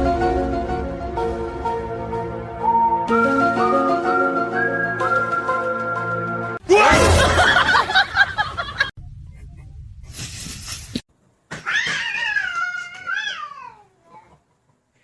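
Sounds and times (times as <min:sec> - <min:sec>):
short hiss: 0:10.1 - 0:11.1.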